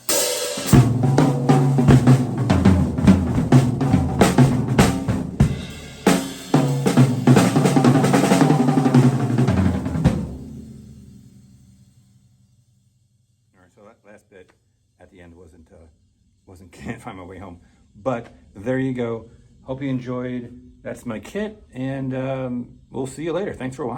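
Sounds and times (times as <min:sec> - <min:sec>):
drum kit solo: 0:00.0 - 0:12.2
cymbals: 0:00.0 - 0:13.3.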